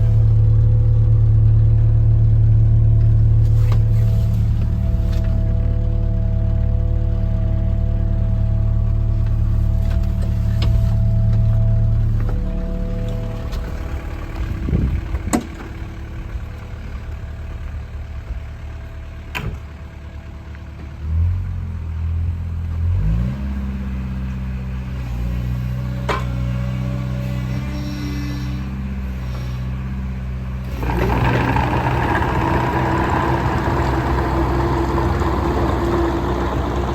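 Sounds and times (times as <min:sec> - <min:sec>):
diesel excavator idling: 0:00.0 - 0:36.9.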